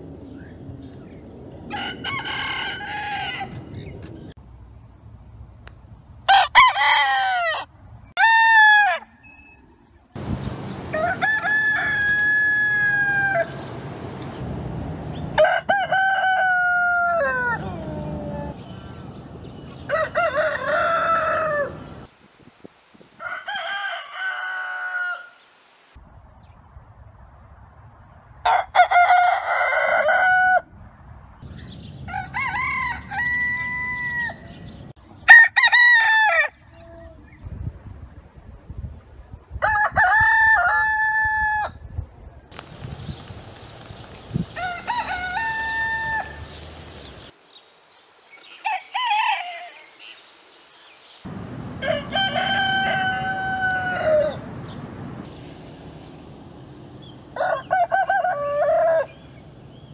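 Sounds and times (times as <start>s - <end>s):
roosters crowing: 1.6s - 3.9s, 6.3s - 9.3s, 10.8s - 13.8s, 15.2s - 22.1s, 23.2s - 25.4s, 28.4s - 30.7s, 32.0s - 36.8s, 39.6s - 41.8s, 44.4s - 47.3s, 48.5s - 50.0s, 51.8s - 54.7s, 56.9s - 59.9s.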